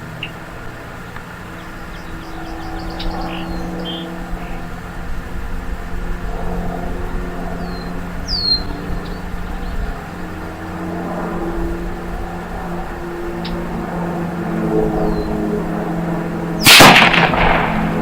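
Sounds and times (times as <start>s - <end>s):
bird chirps: 0.0s - 4.7s, 7.6s - 10.0s
engine hum: 0.0s - 18.0s.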